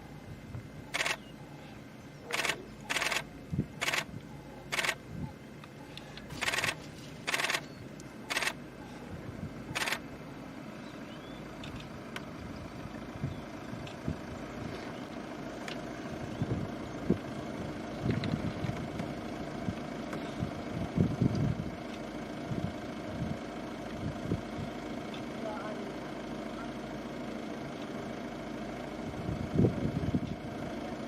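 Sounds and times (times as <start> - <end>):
vehicle engine idling: 0.0 - 31.0
camera shutters firing: 1.0 - 1.2, 2.3 - 4.1, 4.7 - 5.0, 6.3 - 7.6, 8.3 - 8.6, 9.8 - 10.0.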